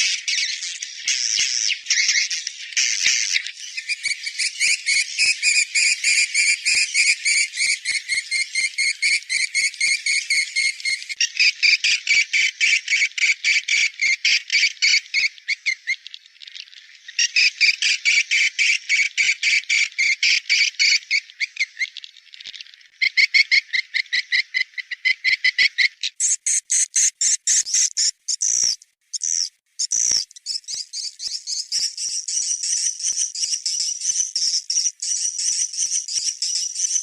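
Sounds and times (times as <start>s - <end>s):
swiftlet chirps from a recording: 26.2s - 37.0s.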